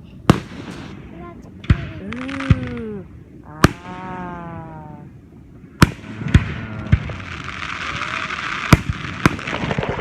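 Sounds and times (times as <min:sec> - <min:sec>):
fireworks crackling hiss: 0:00.0 - 0:03.8, 0:05.8 - 0:10.0
firework shells bursting with bangs: 0:00.2 - 0:02.8, 0:05.8 - 0:10.0.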